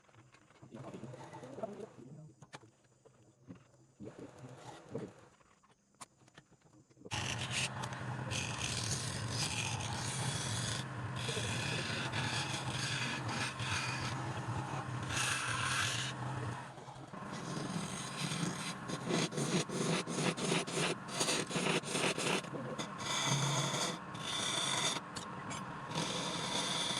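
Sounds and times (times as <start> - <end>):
steady low hum: 7.1 - 26.9
tool scraping wood on lathe: 7.1 - 26.9.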